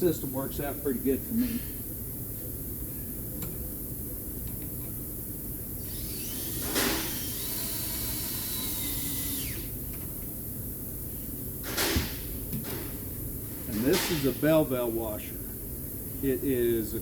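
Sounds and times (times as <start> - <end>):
power tool motor whirring: 5.8 - 9.8.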